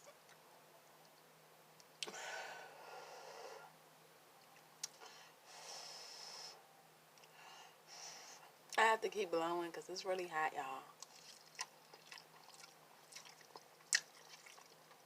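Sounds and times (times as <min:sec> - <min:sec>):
breathy blowing of air: 0:02.0 - 0:03.8, 0:05.0 - 0:06.6.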